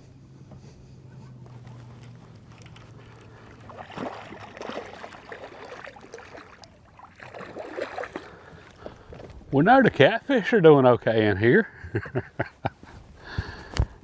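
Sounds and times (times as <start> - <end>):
low steady hum: 0.0 - 14.0
water splashing around a boat: 0.9 - 9.8.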